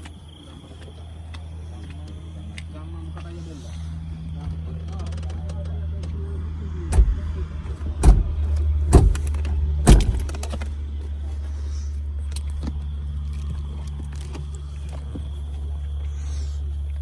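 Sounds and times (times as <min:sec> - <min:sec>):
car engine running: 0:00.0 - 0:17.0
sharp knocks: 0:06.9 - 0:10.7.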